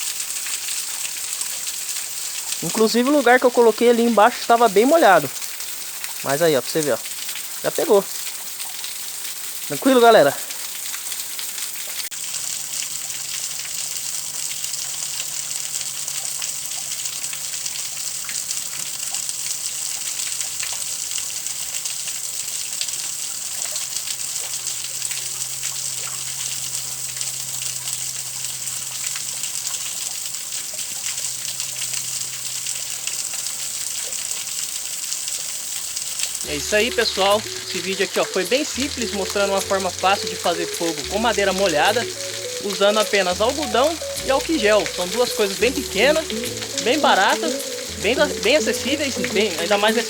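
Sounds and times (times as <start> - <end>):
campfire crackles: 0.0 - 50.0
waterfall rushing: 2.6 - 5.4, 6.2 - 8.1, 9.7 - 10.7, 36.4 - 50.0.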